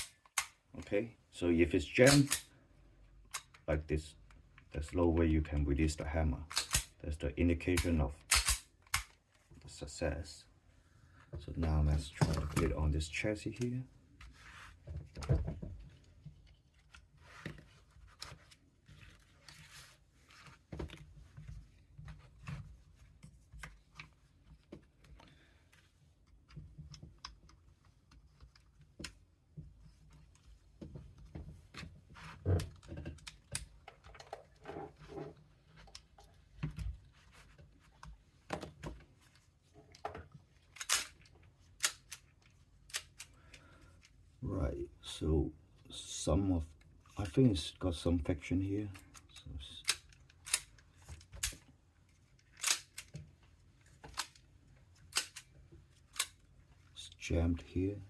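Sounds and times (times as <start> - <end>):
plastic and metal parts clicking: 37.9 - 43.4, 48.9 - 56.5.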